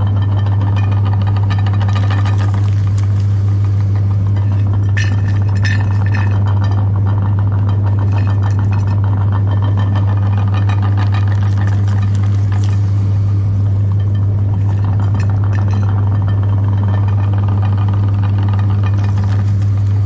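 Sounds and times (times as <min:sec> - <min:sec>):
clinks and rattles: 0:00.0 - 0:03.2, 0:03.8 - 0:12.9, 0:13.6 - 0:19.8
electric meat grinder humming: 0:09.0 - 0:20.0.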